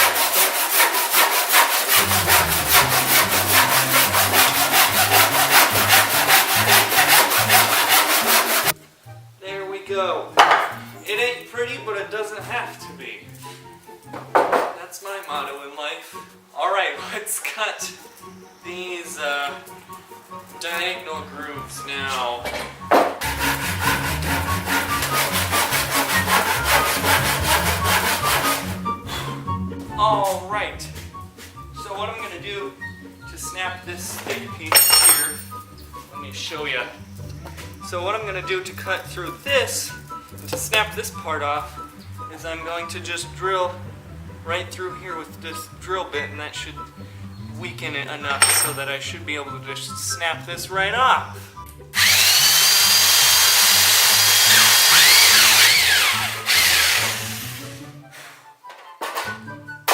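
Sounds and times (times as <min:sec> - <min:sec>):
hand saw cutting wood: 0:00.0 - 0:08.8, 0:23.2 - 0:29.4, 0:52.0 - 0:57.8.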